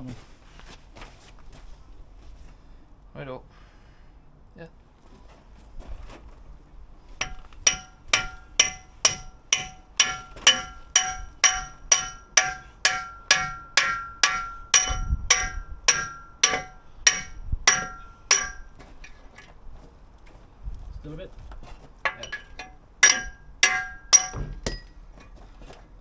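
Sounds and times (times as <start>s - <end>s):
hammer blows on steel: 7.2s - 18.8s.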